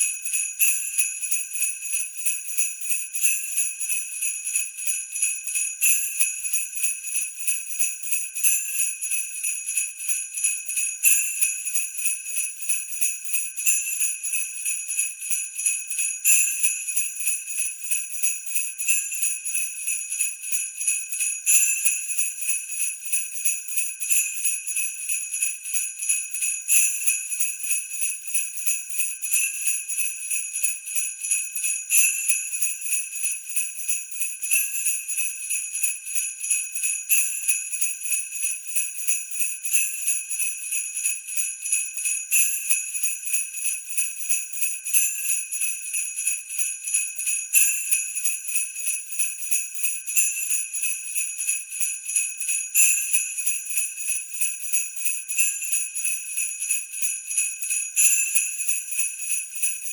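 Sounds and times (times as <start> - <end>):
sleigh bells jingling: 14.7 - 59.9.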